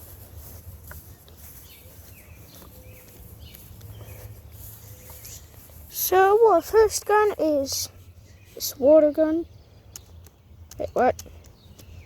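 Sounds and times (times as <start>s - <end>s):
faint bird chirps: 1.0s - 5.8s.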